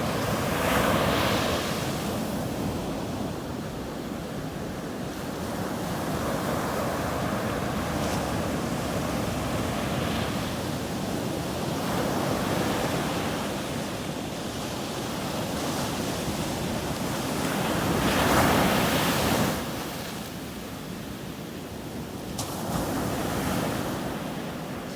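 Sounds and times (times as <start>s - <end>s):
sea waves breaking on beach: 0.0s - 3.5s.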